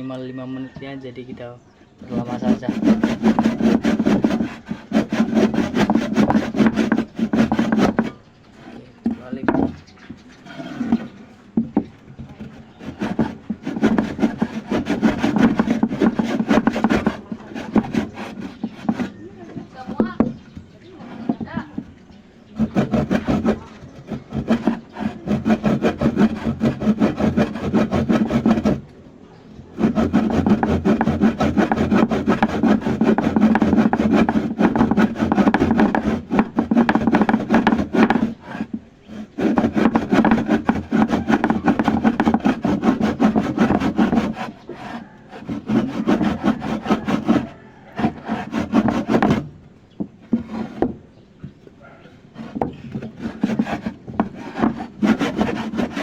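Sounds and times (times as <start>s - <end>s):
hand saw rasping: 2.0s - 28.9s, 29.6s - 49.6s, 50.3s - 51.0s, 51.8s - 56.0s.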